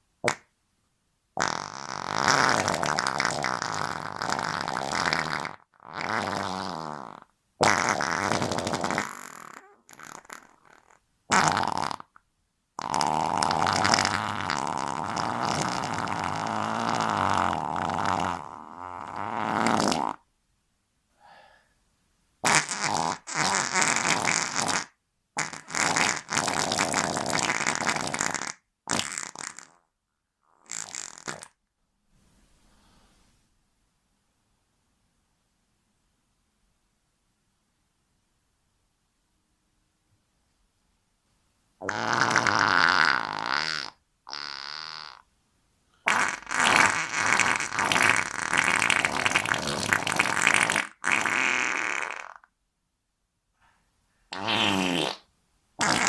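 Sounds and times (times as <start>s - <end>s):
fart sounds: 0.2s - 0.5s, 1.4s - 12.2s, 12.8s - 20.3s, 22.4s - 31.6s, 41.8s - 45.3s, 46.0s - 52.6s, 54.3s - 56.0s.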